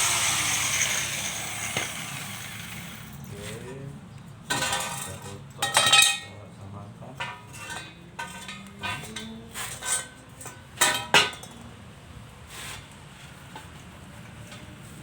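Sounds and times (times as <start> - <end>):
steel pieces clanking: 4.5 - 6.3, 7.2 - 11.6.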